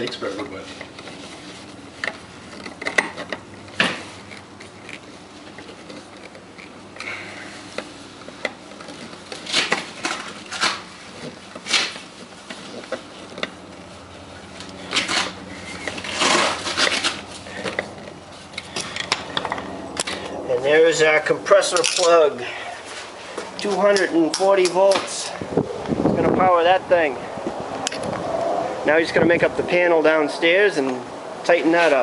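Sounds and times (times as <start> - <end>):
metal tools clicking and rattling: 21.6 - 22.3.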